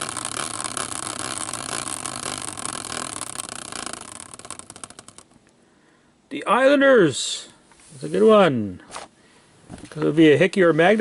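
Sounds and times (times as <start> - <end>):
prize wheel pointer ticking: 0.0 - 5.3.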